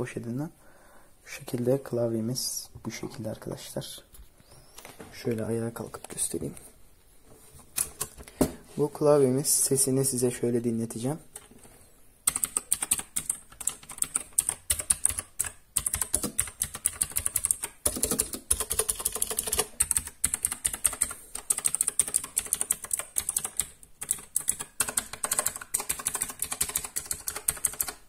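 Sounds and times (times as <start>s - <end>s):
mechanical keyboard typing: 12.2s - 28.0s.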